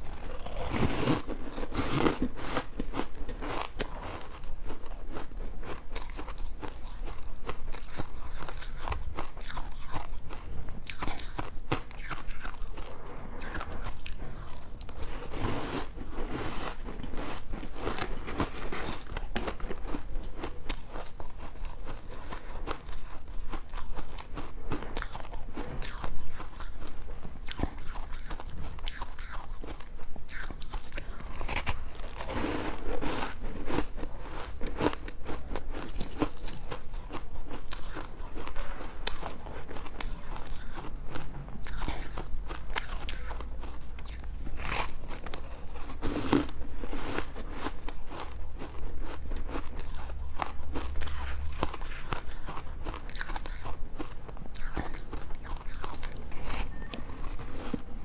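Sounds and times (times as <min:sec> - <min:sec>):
person crunching ice: 0:00.1 - 0:26.7, 0:41.6 - 0:57.9.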